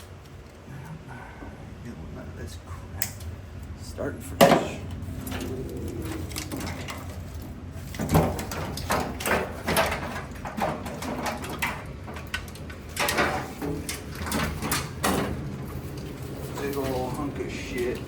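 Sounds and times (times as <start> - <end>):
steady low hum: 0.0 - 18.0
wiring harness knocking and rustling: 6.1 - 18.0.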